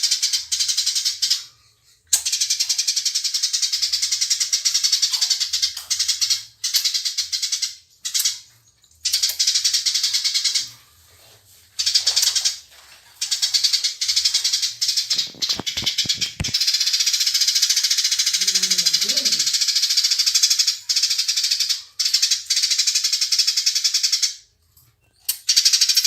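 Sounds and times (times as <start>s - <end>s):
sparrows chattering: 11.8s - 24.3s.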